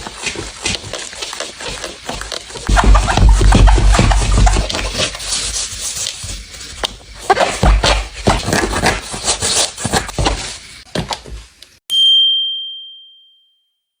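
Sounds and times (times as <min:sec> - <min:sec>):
shoe box packaging rustling: 0:02.0 - 0:11.4
high ding: 0:11.9 - 0:13.9.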